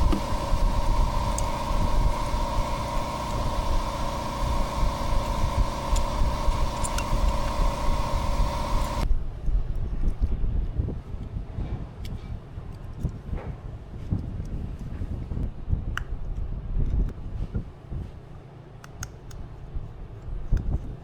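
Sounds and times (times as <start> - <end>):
machine humming and rumbling: 0.0 - 9.1.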